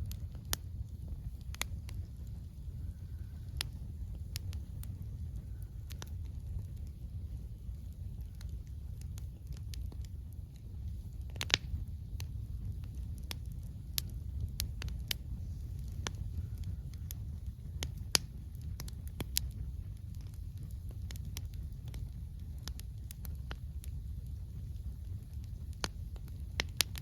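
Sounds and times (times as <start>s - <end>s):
campfire crackling and popping: 0.0s - 27.0s
low fire rumble: 0.0s - 27.0s.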